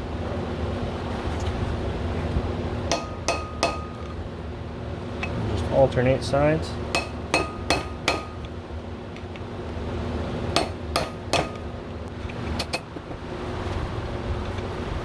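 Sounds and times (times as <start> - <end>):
hammer striking metal wedge: 2.9 - 4.1, 6.9 - 8.5, 10.6 - 11.7
metallic ring: 2.9 - 4.1.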